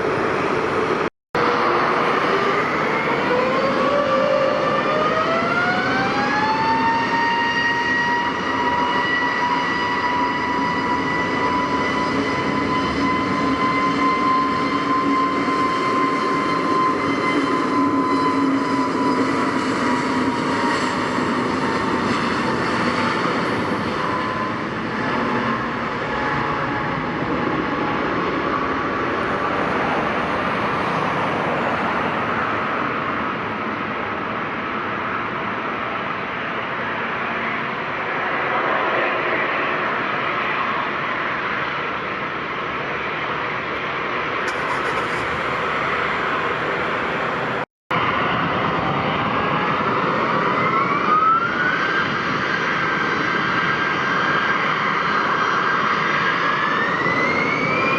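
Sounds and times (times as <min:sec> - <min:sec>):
jet engines whining: 0:00.0 - 0:57.9.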